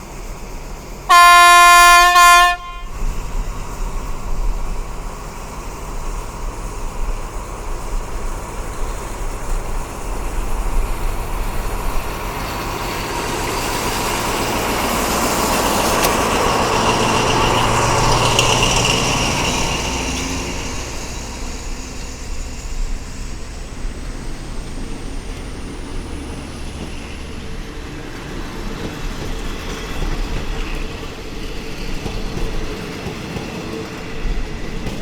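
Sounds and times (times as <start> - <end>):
train rumbling on rails: 0.0 - 35.0
train horn blasts: 1.1 - 3.2.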